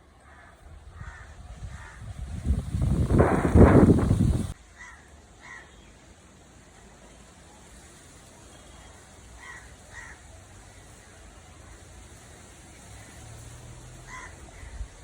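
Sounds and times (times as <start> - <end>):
crows cawing: 0.2 - 2.0, 4.8 - 5.7, 9.4 - 10.2, 14.1 - 14.8.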